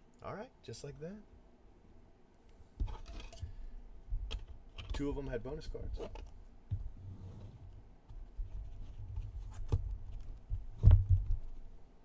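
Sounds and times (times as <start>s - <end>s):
shuffling and rubbing on desk: 6.8s - 11.7s.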